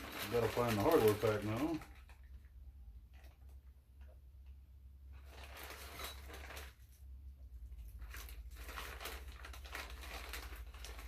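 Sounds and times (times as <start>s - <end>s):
packaging rustling and crinkling: 0.0s - 2.5s, 5.1s - 11.0s.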